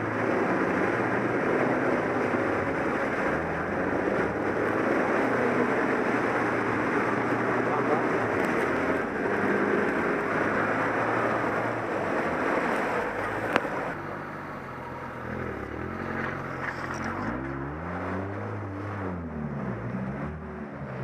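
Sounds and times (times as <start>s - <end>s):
dense wash of noise: 0.0s - 18.4s
engine working under load: 0.0s - 21.0s.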